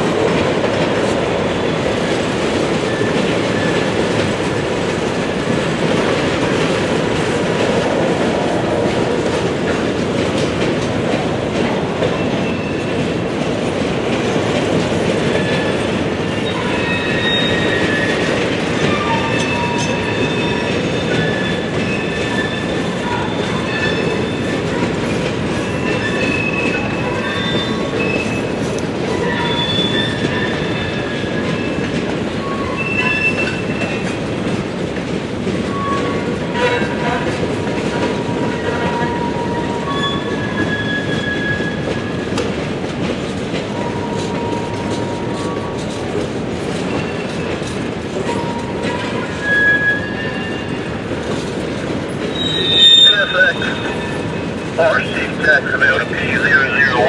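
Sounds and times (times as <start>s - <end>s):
train wheels rumbling on rails: 0.0s - 57.0s
wheels clickety-clack at rail joints: 0.0s - 57.0s
high-pitched wheel squeals: 16.4s - 18.2s, 29.1s - 31.8s, 39.0s - 41.9s, 48.3s - 50.8s, 52.3s - 54.3s.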